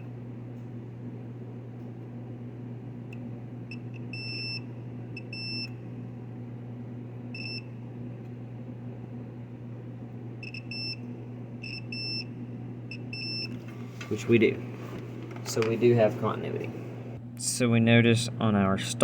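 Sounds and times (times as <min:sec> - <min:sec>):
steady low hum: 0:00.0 - 0:19.0
multimeter beeps: 0:03.7 - 0:05.8, 0:07.3 - 0:07.8, 0:10.4 - 0:12.3, 0:12.9 - 0:13.6.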